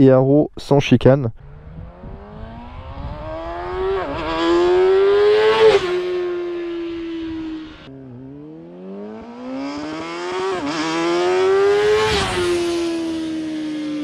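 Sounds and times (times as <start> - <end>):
motorcycle engine revving: 1.4 - 14.0.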